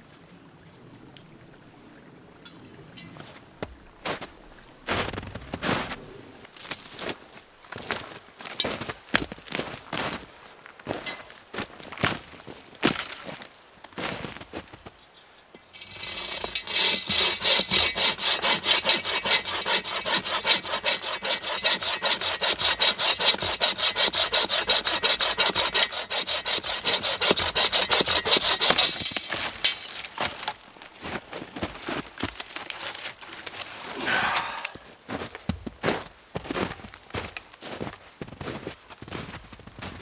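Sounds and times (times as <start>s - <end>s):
hand saw cutting wood: 15.8s - 30.5s, 33.8s - 34.9s.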